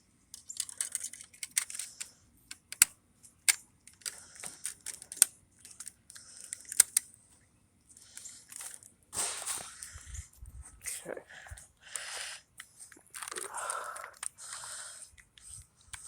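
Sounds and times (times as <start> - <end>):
sharp clicks: 0.4 - 7.1
rustling and scraping: 3.2 - 10.9.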